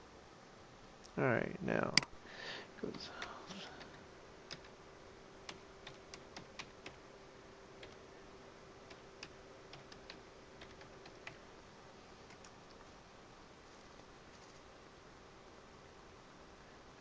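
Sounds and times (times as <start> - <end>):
faint steady hum: 0.0 - 17.0
typing on computer keyboard: 3.2 - 4.8, 5.5 - 7.0, 8.9 - 11.4.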